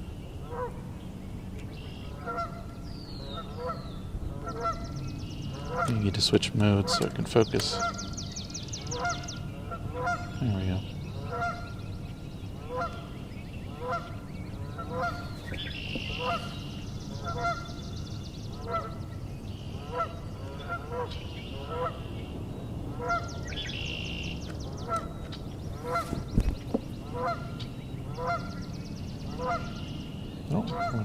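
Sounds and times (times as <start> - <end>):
songbird buzzy trills: 0.0 - 31.0
geese honking: 0.4 - 0.8, 1.8 - 4.9, 5.5 - 8.2, 8.8 - 11.8, 12.6 - 19.1, 19.7 - 22.1, 22.9 - 26.3, 27.0 - 28.7, 29.3 - 31.0.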